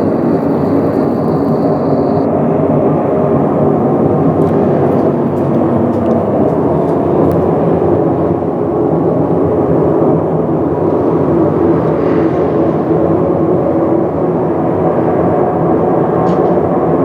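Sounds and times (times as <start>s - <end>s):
deep rumbling drone: 0.0s - 2.3s
faint held tones: 0.0s - 2.3s.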